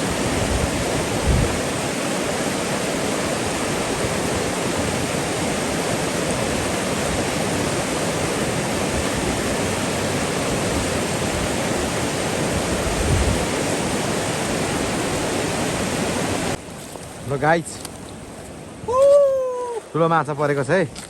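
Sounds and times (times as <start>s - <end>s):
rushing river water: 0.0s - 21.0s.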